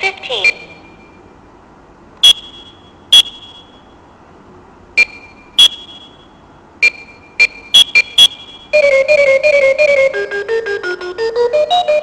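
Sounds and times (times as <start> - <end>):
alarm clock electronic beeps: 0.3 - 1.2, 2.2 - 3.8, 5.0 - 9.4.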